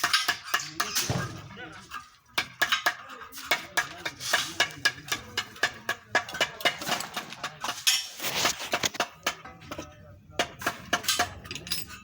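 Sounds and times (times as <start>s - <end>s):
metal tools clinking: 11.0s - 12.0s.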